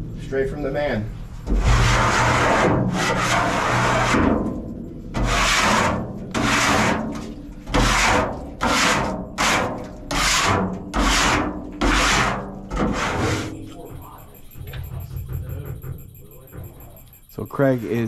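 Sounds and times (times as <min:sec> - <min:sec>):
rough scraping strokes: 0:05.2 - 0:13.6.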